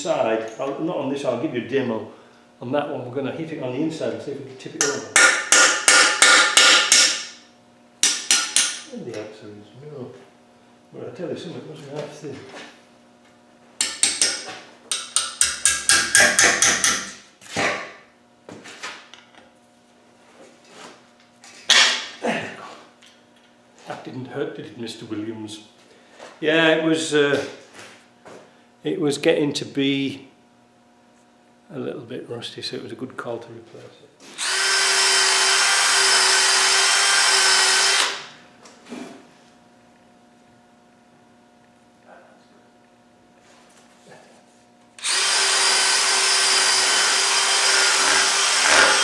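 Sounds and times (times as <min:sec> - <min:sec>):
hammer striking metal plug: 0:04.8 - 0:07.4, 0:08.0 - 0:08.9, 0:13.8 - 0:17.2
workshop tool hissing and whining: 0:34.3 - 0:38.4, 0:45.0 - 0:49.0.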